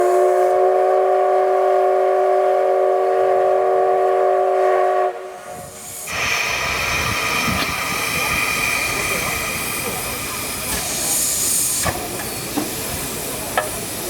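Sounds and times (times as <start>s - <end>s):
steam whistle chord: 0.0s - 5.4s
steam hissing: 3.7s - 14.0s.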